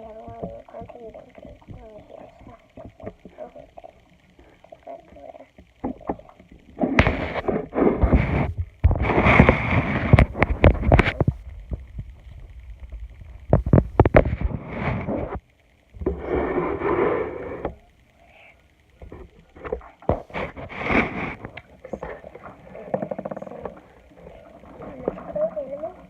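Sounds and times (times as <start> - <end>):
handling noise on microphone: 5.8 - 17.8, 19.0 - 25.8.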